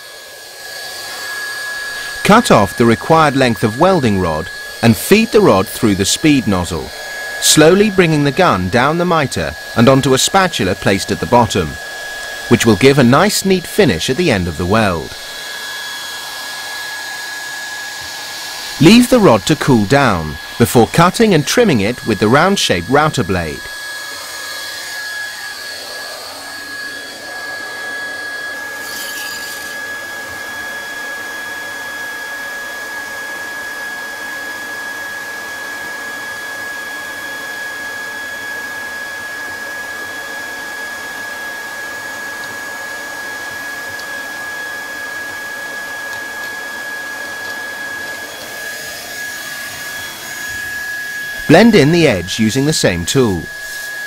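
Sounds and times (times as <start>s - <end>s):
constant high whine: 0.0s - 30.9s
hot-air blower hiss: 0.0s - 54.0s.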